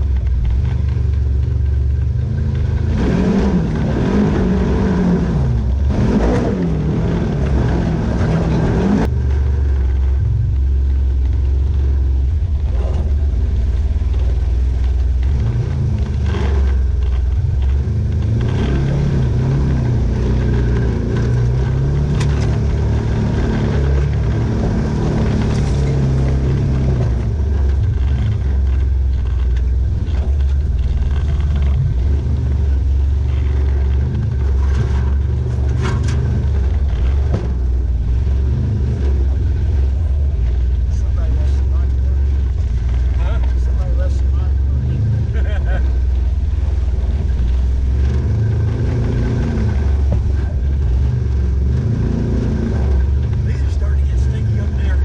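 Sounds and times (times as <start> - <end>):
off-road vehicle engine revving: 0.0 - 55.0.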